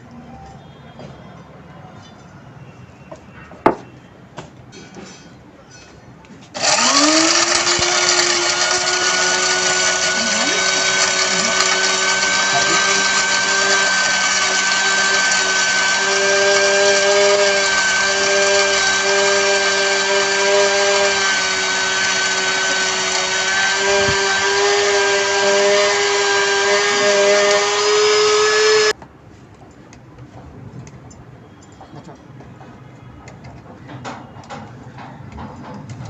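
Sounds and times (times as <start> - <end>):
spice grinder motor whine: 6.6 - 29.0.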